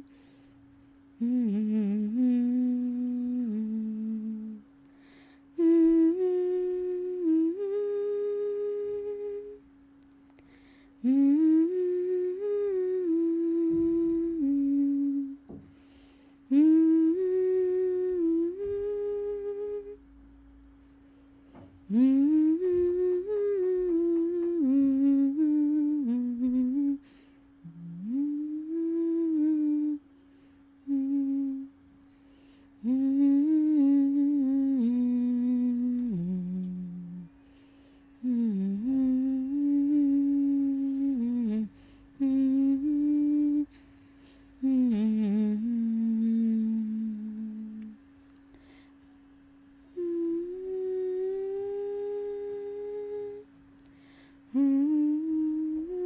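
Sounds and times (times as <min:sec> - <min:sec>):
person humming slow melody: 0:00.0 - 0:09.7, 0:10.3 - 0:56.0
faint steady held tone: 0:00.0 - 0:21.2, 0:21.9 - 0:56.0.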